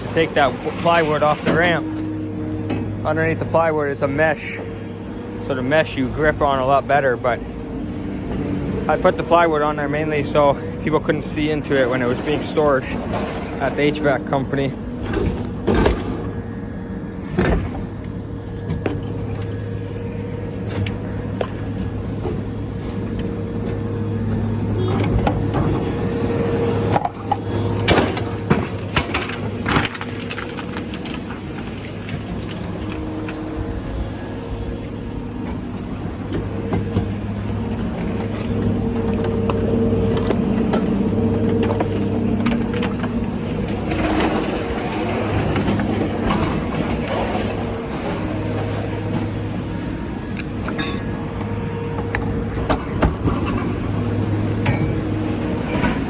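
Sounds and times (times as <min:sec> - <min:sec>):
heavy machine engine running: 0:00.0 - 0:56.0
scrap metal clanks and bangs: 0:00.0 - 0:56.0.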